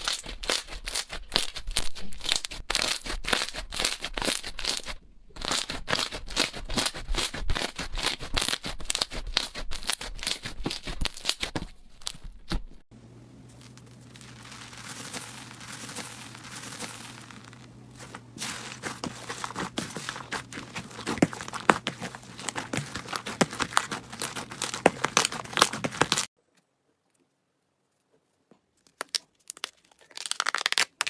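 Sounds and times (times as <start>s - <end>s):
slime crackling and popping: 0.0s - 12.6s, 13.6s - 26.3s, 28.9s - 31.0s
slime squishing: 0.0s - 12.8s, 13.4s - 26.3s
low steady hum: 11.7s - 26.3s.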